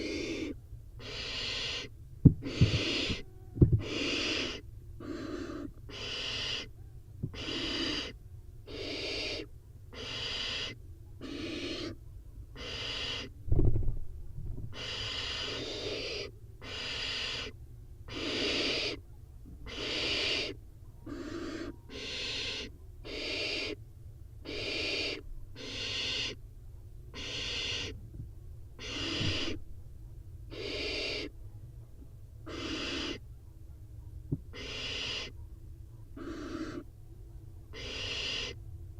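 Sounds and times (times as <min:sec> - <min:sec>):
owl nestlings hissing begging calls: 0:00.0 - 0:03.2, 0:03.8 - 0:06.7, 0:07.3 - 0:12.0, 0:12.6 - 0:13.3, 0:14.7 - 0:19.0, 0:19.6 - 0:23.8, 0:24.4 - 0:26.4, 0:27.1 - 0:28.0, 0:28.8 - 0:29.6, 0:30.5 - 0:31.3, 0:32.5 - 0:33.2, 0:34.5 - 0:35.4, 0:36.2 - 0:36.9, 0:37.7 - 0:38.6
low steady hum: 0:00.0 - 0:38.9.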